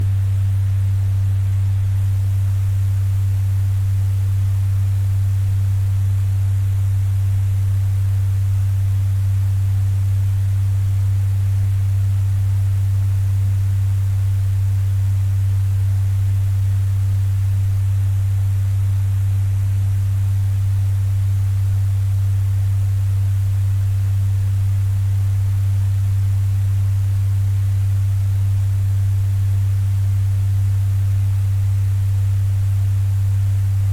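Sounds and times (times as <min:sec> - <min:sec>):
electric fan humming: 0:00.0 - 0:33.9.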